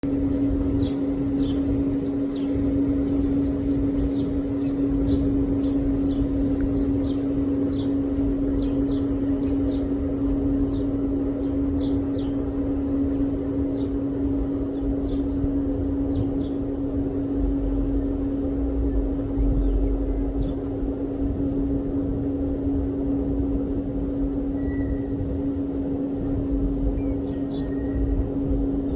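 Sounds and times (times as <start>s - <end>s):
loud steady mechanical hum: 0.0s - 28.9s
small birds chirping: 0.1s - 16.8s, 24.6s - 28.9s.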